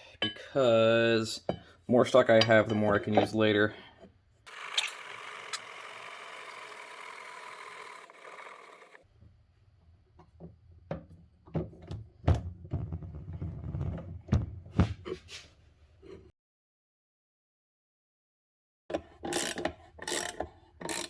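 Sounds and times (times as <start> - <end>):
mill motor whining: 4.5 - 9.0.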